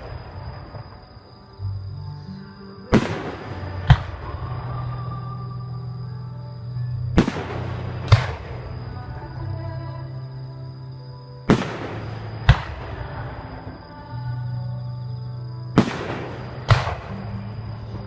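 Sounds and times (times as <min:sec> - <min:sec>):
fireworks bursting: 0:00.0 - 0:01.6, 0:02.8 - 0:05.5, 0:07.0 - 0:09.3, 0:11.5 - 0:13.9, 0:15.7 - 0:18.0
background music: 0:00.0 - 0:18.0.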